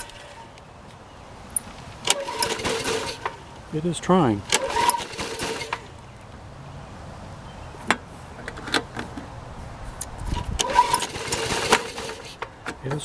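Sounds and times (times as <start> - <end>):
mower engine turning over: 0.0 - 0.6, 1.4 - 6.3, 7.8 - 13.0
recoil starter pull: 0.0 - 0.6, 1.6 - 3.6, 4.3 - 6.0, 10.0 - 13.0.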